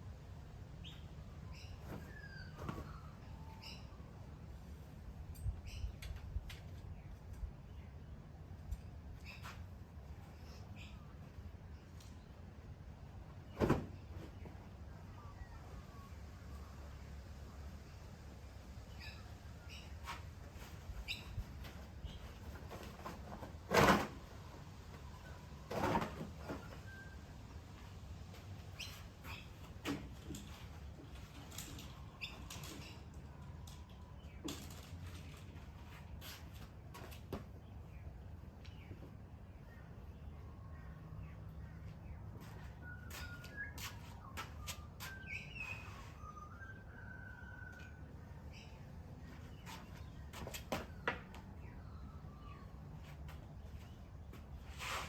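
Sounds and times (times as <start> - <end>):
birds whistling and chirping: 0.8 - 4.1, 42.6 - 48.8.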